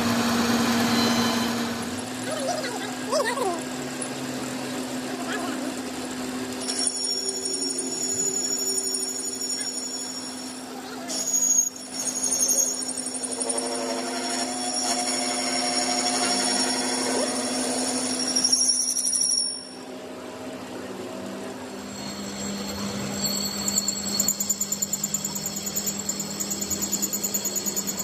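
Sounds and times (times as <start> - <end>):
machine humming: 0.0 - 11.0, 19.6 - 28.0.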